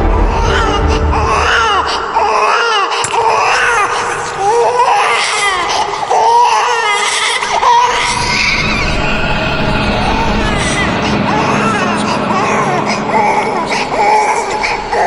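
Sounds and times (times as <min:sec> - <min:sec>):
low rumble: 0:00.0 - 0:02.5, 0:08.3 - 0:15.0.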